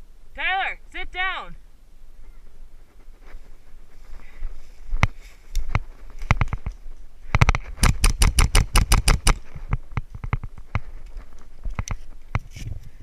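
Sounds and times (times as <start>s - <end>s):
airsoft guns firing: 7.7s - 9.4s.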